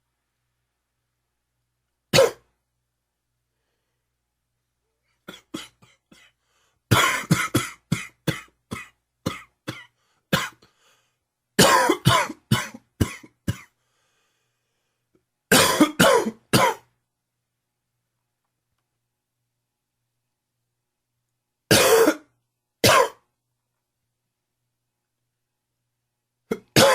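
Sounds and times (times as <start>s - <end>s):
man hacking cough: 2.1s - 2.5s, 5.2s - 6.3s, 6.9s - 10.6s, 11.6s - 13.7s, 15.5s - 16.9s, 21.7s - 23.3s, 26.5s - 26.9s.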